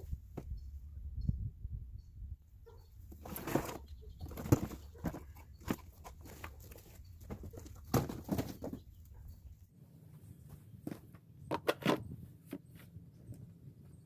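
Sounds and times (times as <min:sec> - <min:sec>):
cardboard and packaging rustling: 0:03.1 - 0:08.8.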